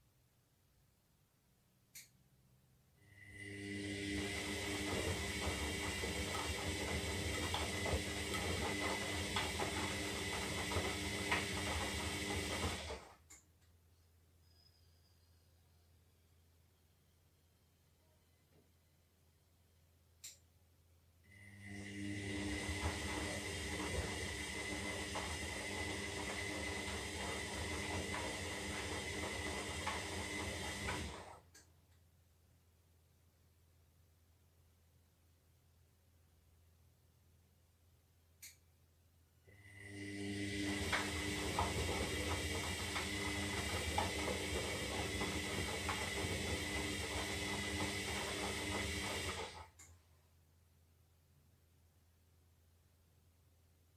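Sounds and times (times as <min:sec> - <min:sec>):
washing machine motor whine: 0:03.2 - 0:13.2, 0:21.5 - 0:31.4, 0:39.6 - 0:49.8.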